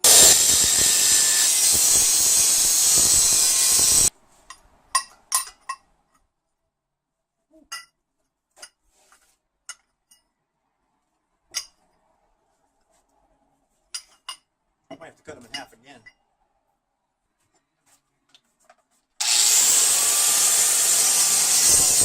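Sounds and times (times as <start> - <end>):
power tool cutting steel pipe: 0.0 - 4.1, 19.2 - 22.0
metal pipe pieces clinking: 5.0 - 5.8.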